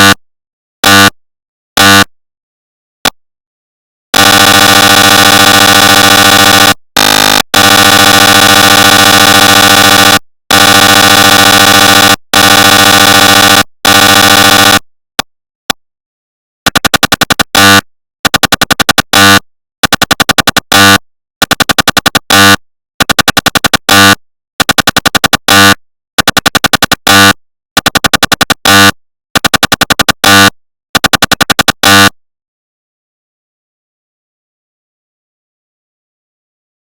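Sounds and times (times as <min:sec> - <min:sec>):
mri scanner loud buzz: 0:04.2 - 0:14.8, 0:23.8 - 0:24.2, 0:31.7 - 0:32.2
mri scanner rapid knocking: 0:04.2 - 0:14.8, 0:16.7 - 0:32.1.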